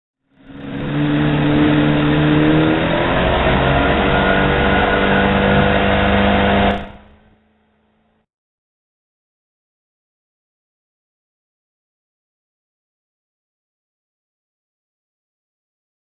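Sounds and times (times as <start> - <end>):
boat motor running: 0.4 - 8.2.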